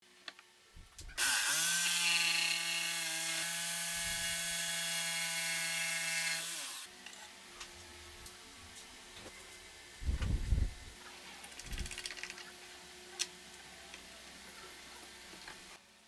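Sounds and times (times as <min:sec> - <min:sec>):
electric power tool whine: 0:01.2 - 0:06.9.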